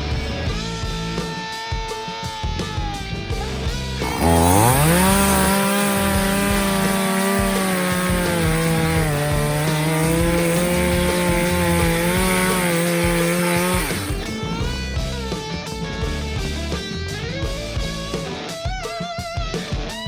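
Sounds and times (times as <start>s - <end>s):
chainsaw running at high speed: 0.0s - 14.9s.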